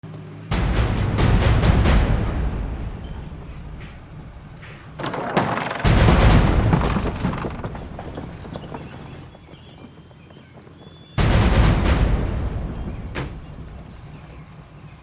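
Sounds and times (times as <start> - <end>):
deep boom with rumble: 0.5 - 4.9, 5.8 - 8.8, 11.2 - 14.8
smaller hit: 0.5 - 5.0.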